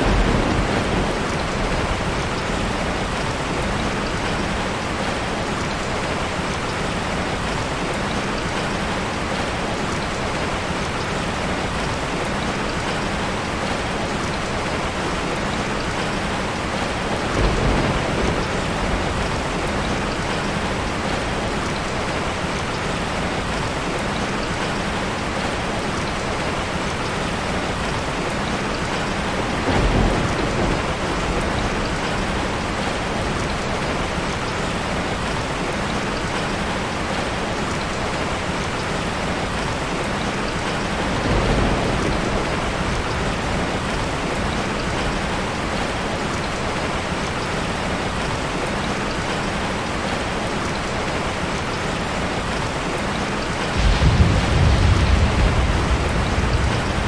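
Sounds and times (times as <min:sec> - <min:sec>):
low rumbles of thunder: 0:00.0 - 0:05.2, 0:15.6 - 0:22.7, 0:28.9 - 0:33.9, 0:40.6 - 0:46.0, 0:53.7 - 0:57.0
heavy rain falling: 0:00.0 - 0:57.0.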